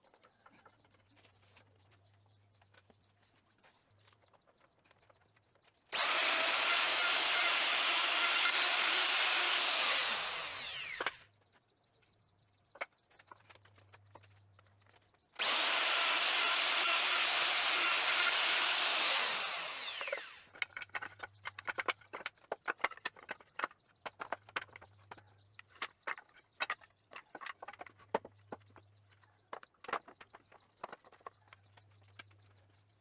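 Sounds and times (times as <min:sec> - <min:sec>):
electric power tool running: 0:05.9 - 0:11.2, 0:15.4 - 0:20.5
wooden pieces knocking: 0:19.8 - 0:32.0.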